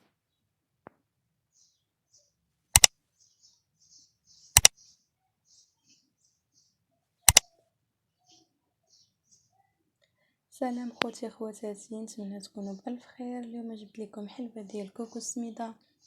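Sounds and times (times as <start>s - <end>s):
sharp double clicks: 2.8s - 3.0s, 4.5s - 4.8s, 7.3s - 7.5s.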